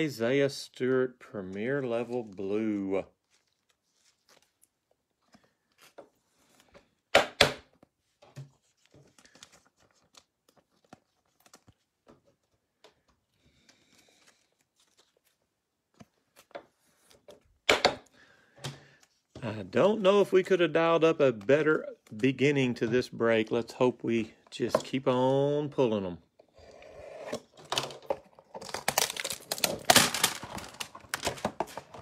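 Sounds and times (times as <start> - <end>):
cards and wrapper rustling: 0.7 - 7.1, 7.8 - 17.6, 27.4 - 32.0
packaging ripping: 28.4 - 31.8.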